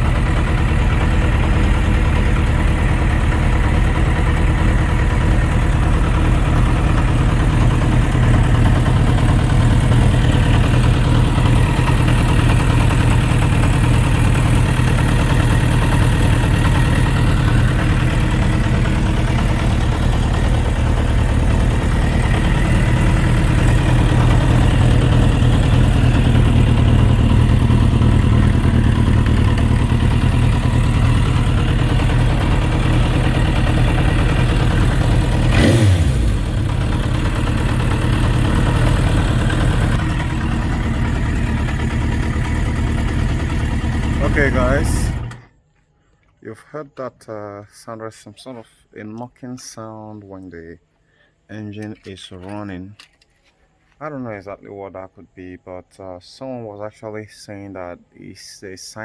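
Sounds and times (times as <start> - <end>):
engine ticking and knocking: 0.0 - 45.4
motorcycle engine idling: 0.0 - 45.5.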